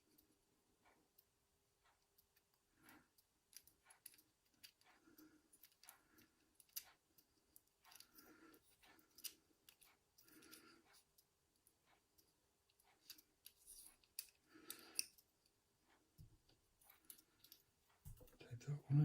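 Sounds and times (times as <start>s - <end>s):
small metal clicks: 1.8s - 15.3s, 16.4s - 17.7s.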